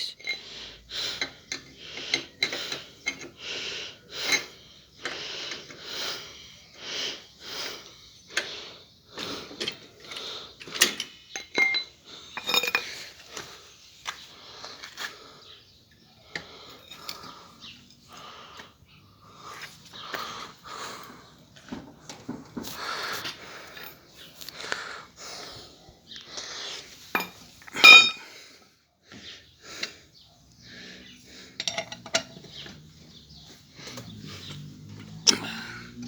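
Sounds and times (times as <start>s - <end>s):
metal tools clinking and scraping: 0.0s - 0.5s, 1.2s - 3.4s, 9.2s - 13.5s, 16.3s - 18.1s, 27.1s - 28.3s, 31.4s - 33.2s.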